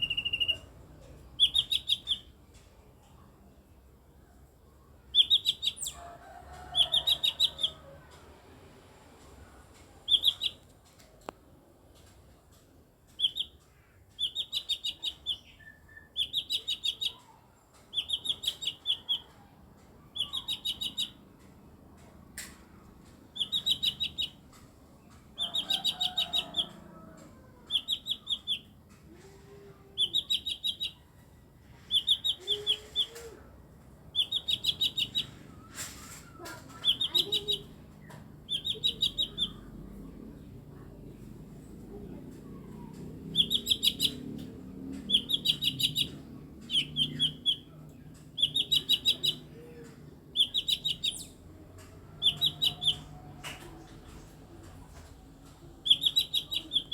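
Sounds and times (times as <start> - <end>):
bird high chattering call: 0.0 - 0.7, 1.4 - 2.3, 5.2 - 6.0, 20.2 - 21.2, 23.4 - 24.4, 27.7 - 28.7, 30.0 - 31.0, 31.8 - 33.2, 34.2 - 36.1, 36.8 - 37.7, 38.5 - 39.6, 43.3 - 44.2, 45.1 - 47.7, 48.4 - 49.4, 50.4 - 51.3, 52.2 - 53.1, 55.8 - 56.9.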